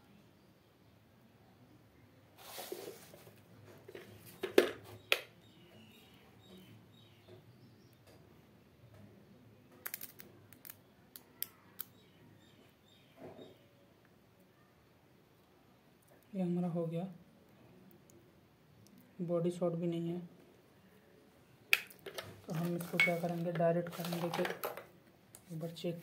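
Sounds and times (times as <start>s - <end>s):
small hard parts rustling: 9.7s - 11.3s, 21.8s - 25.0s.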